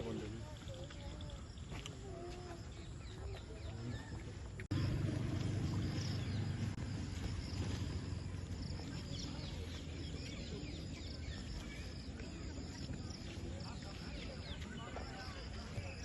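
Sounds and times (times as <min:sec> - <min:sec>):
small birds chirping: 0:00.0 - 0:16.0
steady low rumble: 0:04.6 - 0:11.6.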